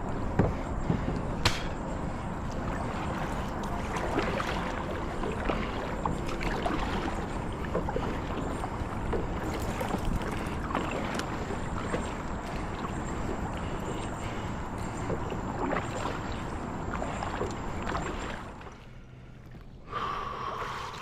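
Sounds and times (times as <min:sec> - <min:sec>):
paddle splashes: 0:00.5 - 0:21.0
water rushing: 0:02.1 - 0:18.8.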